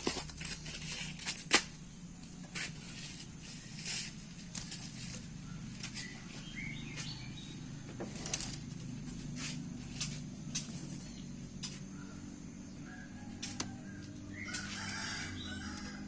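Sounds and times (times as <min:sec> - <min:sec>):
steady low hum: 0:00.0 - 0:16.0
bird clicks and flutters: 0:13.3 - 0:13.8.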